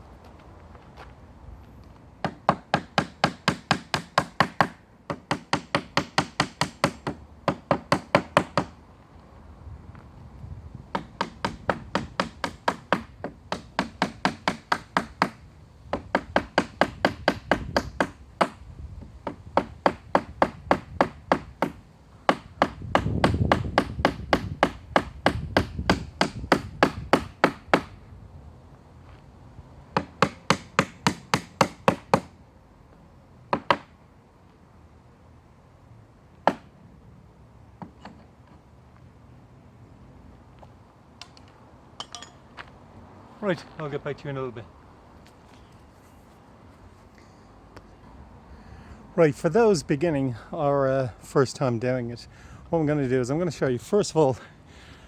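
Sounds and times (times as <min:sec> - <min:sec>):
claw hammer striking nails: 0:30.0 - 0:32.3.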